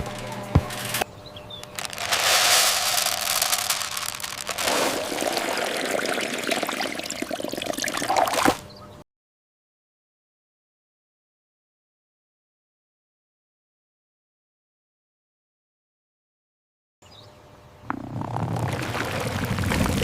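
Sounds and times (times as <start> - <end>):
liquid pouring and trickling: 2.8 - 8.6.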